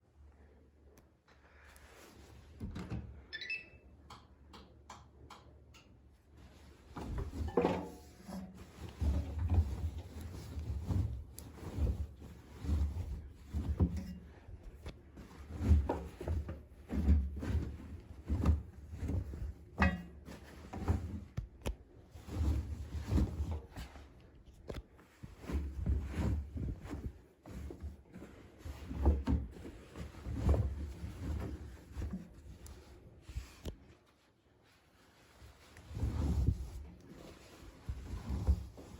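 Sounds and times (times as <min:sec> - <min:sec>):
washing machine high tone: 0:03.3 - 0:03.9.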